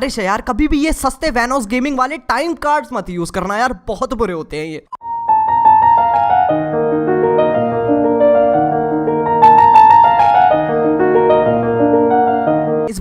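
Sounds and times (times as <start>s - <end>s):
piano music: 5.0s - 13.0s.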